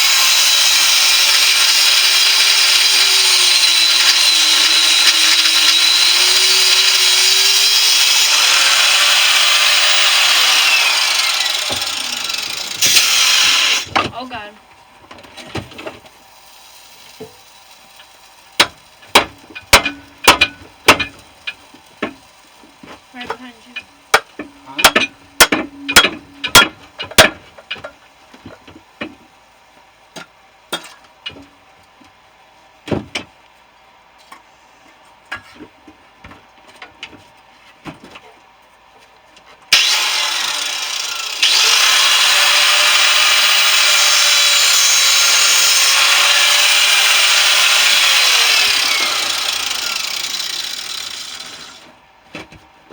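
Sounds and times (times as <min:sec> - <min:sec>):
power tool grinding metal: 0:00.0 - 0:13.9, 0:39.7 - 0:51.8
strikes on metal casing: 0:24.2 - 0:27.4.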